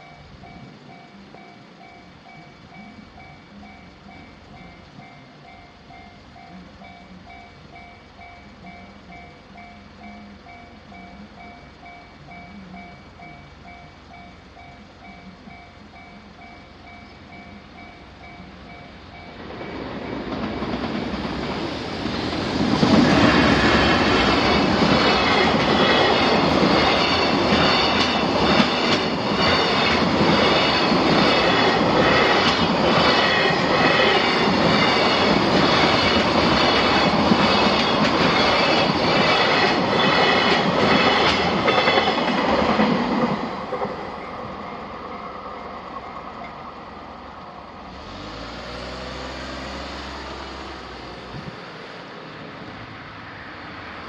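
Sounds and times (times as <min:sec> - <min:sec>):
level crossing warning bell: 0:00.0 - 0:47.7
train wheels clattering over rail joints: 0:19.4 - 0:45.4.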